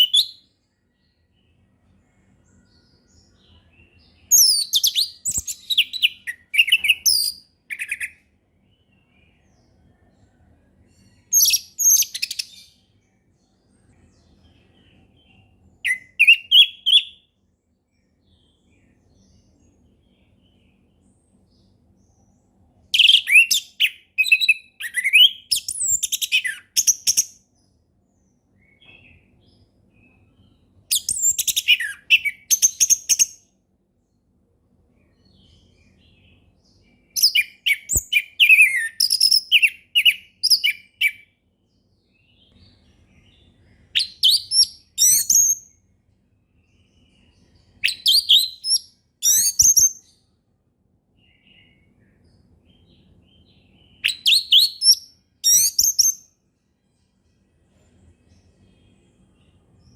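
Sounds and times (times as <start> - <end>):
thrush singing whistled notes: 44.0 - 45.7, 47.8 - 50.0, 53.9 - 56.3.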